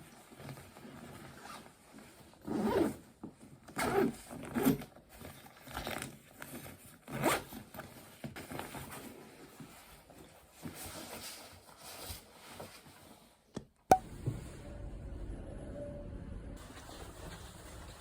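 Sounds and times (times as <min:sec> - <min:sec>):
zipper rasping: 0:02.4 - 0:03.0.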